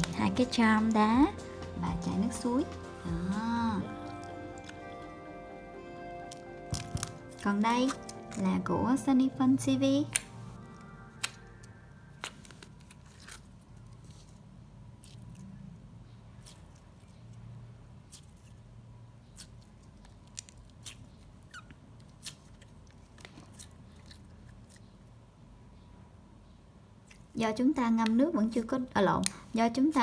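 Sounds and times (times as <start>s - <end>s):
steady low hum: 0.0s - 12.3s
slime clicks and crackles: 4.0s - 4.9s, 6.2s - 8.5s, 10.1s - 14.2s, 19.4s - 24.9s.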